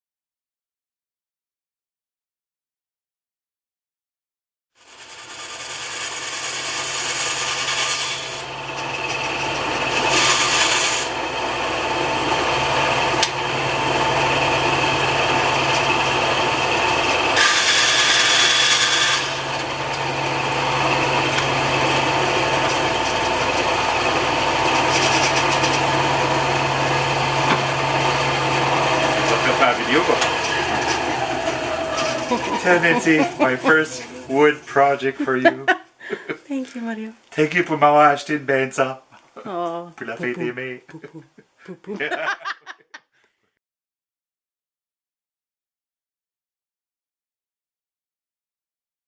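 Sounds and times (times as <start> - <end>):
saw blade rasping through wood: 4.8 - 11.4, 12.7 - 34.5
bandsaw motor hum: 4.8 - 35.6.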